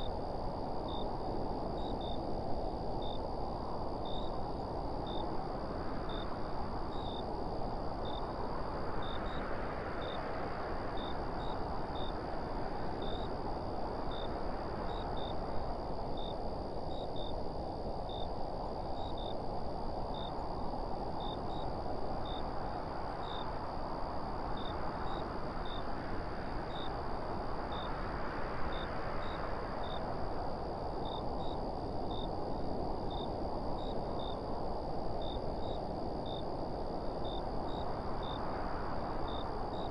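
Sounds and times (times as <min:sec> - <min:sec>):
wind blowing in gusts: 0:00.0 - 0:39.9.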